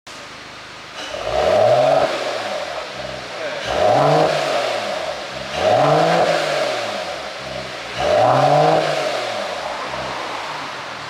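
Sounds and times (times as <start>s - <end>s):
car engine revving with exhaust pops: 0.9s - 11.0s.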